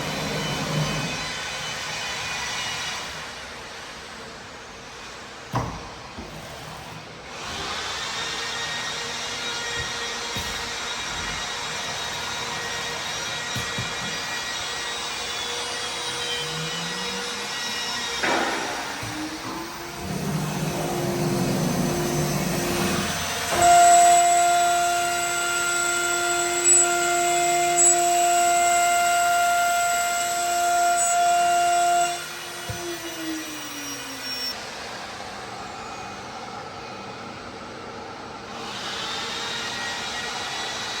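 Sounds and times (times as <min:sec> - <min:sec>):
router spindle whining: 0:06.6 - 0:34.6.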